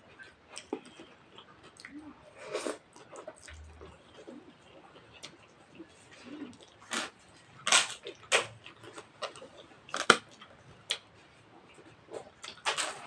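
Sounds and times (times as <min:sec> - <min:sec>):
chewing and lip-smacking: 0:00.0 - 0:07.2, 0:08.0 - 0:13.0.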